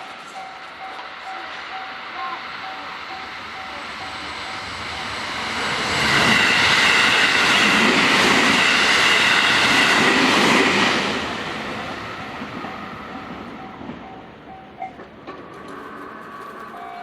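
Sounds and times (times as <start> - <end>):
level crossing warning bell: 0.0 - 6.3, 11.3 - 17.0
electric train passing: 0.0 - 17.0.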